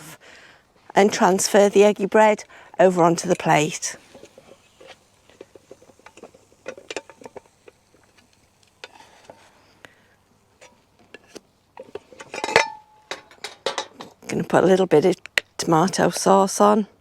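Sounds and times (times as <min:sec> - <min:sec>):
pan and utensils clicking: 0:03.2 - 0:09.4, 0:10.6 - 0:14.2.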